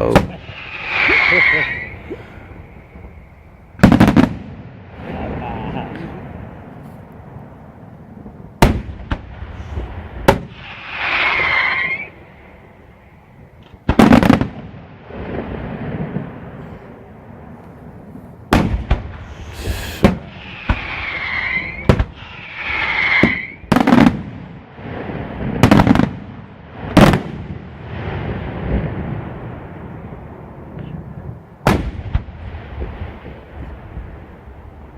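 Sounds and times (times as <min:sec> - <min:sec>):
whistling glides: 0:00.5 - 0:03.3, 0:10.8 - 0:12.2, 0:20.4 - 0:23.7
firework shells bursting: 0:18.5 - 0:24.2.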